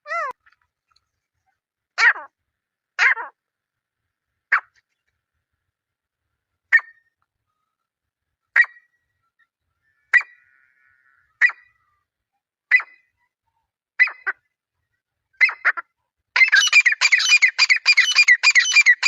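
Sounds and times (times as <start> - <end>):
francolin calling: 16.4 - 19.0.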